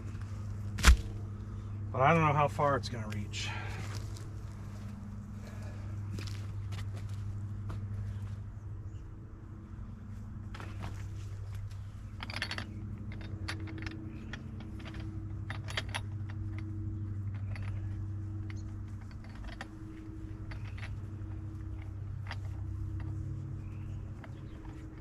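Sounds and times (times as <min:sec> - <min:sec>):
tractor engine idling: 0:10.4 - 0:25.0
metal rigging clinking: 0:11.6 - 0:25.0.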